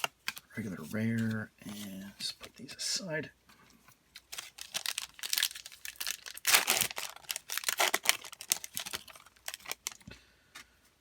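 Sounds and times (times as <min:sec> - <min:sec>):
foil wrapper crinkling: 0:04.2 - 0:10.1.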